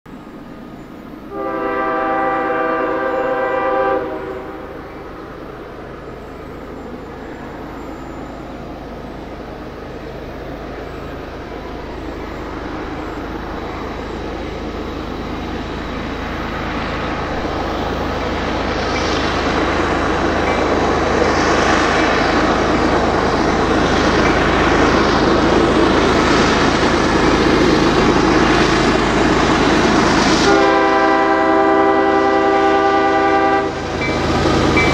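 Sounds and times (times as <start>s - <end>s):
train engine and wheel rumble: 0.1s - 34.9s
train horn blast: 1.3s - 4.8s, 30.4s - 34.2s.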